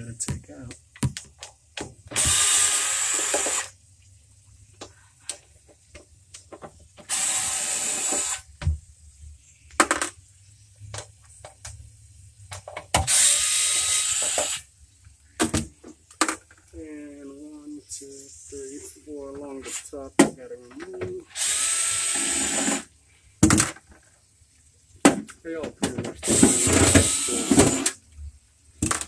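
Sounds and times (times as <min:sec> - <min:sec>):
screws clicking and knocking: 0:01.2 - 0:03.7, 0:12.5 - 0:14.6, 0:26.2 - 0:28.0
power drill backing out screws: 0:02.1 - 0:03.7, 0:07.0 - 0:08.4, 0:21.3 - 0:22.9, 0:26.2 - 0:28.0.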